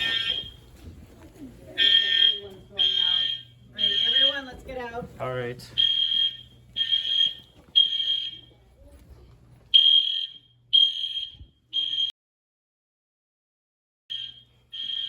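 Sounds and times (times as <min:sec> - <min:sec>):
fire alarm horn beeping: 0:00.0 - 0:00.6, 0:01.8 - 0:04.6, 0:05.8 - 0:08.5, 0:09.7 - 0:12.1, 0:14.1 - 0:15.0.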